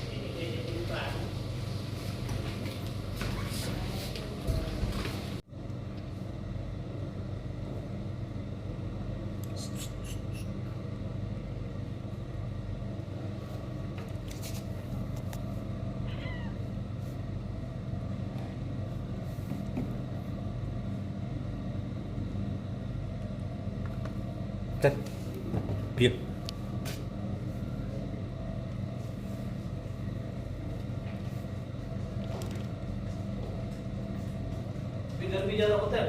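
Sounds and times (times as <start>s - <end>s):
droning hum: 0.0s - 36.0s
cat meowing softly: 16.0s - 16.7s.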